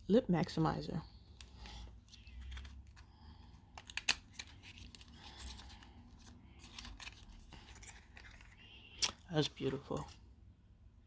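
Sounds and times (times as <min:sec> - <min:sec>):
wrapping rustling and tearing: 0:01.4 - 0:09.6
packaging clicks: 0:03.7 - 0:05.2.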